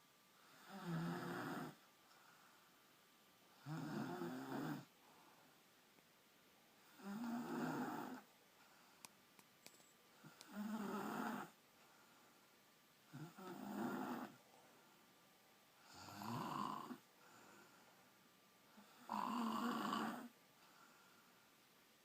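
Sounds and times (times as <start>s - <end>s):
quiet breathing: 0.0s - 5.8s, 6.6s - 21.8s
woman snoring: 0.4s - 1.8s, 3.6s - 4.9s, 6.8s - 8.3s, 10.2s - 11.6s, 13.1s - 14.4s, 15.8s - 17.0s, 18.8s - 20.3s.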